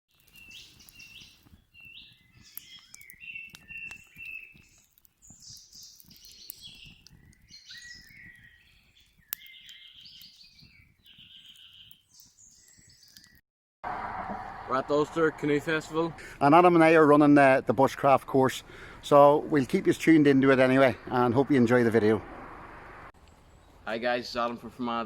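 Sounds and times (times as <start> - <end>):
songbirds singing: 0.1 - 13.4, 18.2 - 24.0.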